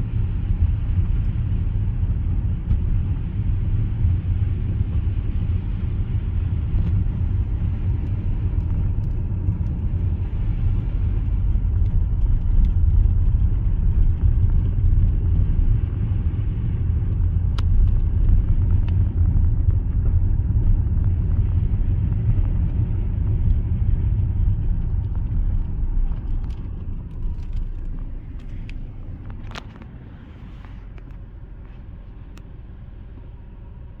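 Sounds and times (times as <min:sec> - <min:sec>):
car road and engine rumble: 0:00.0 - 0:34.0.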